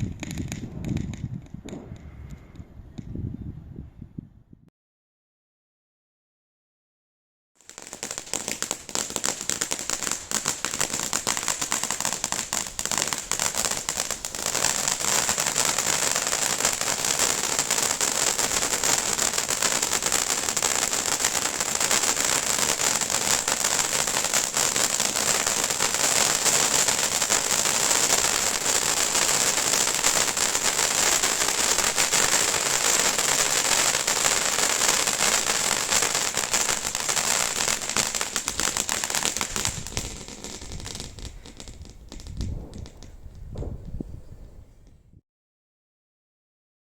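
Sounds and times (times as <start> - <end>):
firework fountain hissing and crackling: 7.6 - 44.2.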